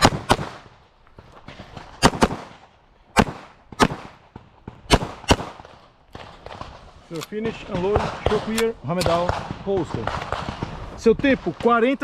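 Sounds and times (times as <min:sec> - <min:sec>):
handgun shots echoing: 0:07.1 - 0:10.6.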